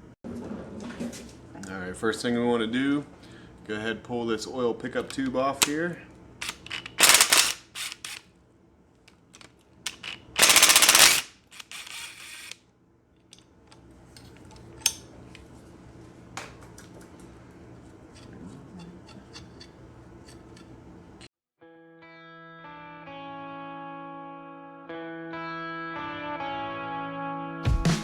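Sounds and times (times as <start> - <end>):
impact wrench rattling: 6.4 - 8.2, 9.4 - 12.6
tools clicking and clinking: 6.4 - 8.2, 9.1 - 12.6, 13.2 - 15.4, 18.1 - 21.3.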